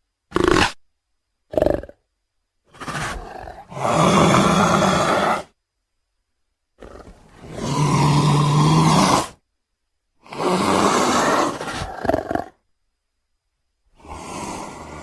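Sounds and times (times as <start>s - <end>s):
roaring animal calls: 2.7s - 5.6s, 6.8s - 9.4s, 10.2s - 12.6s.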